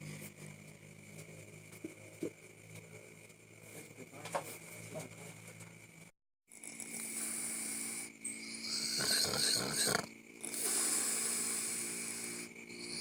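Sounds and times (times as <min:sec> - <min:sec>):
person snoring: 0:06.6 - 0:13.0.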